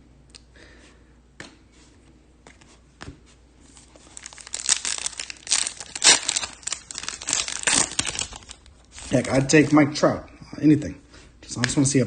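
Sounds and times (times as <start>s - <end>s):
foil wrapper crinkling torn open: 4.0s - 9.6s.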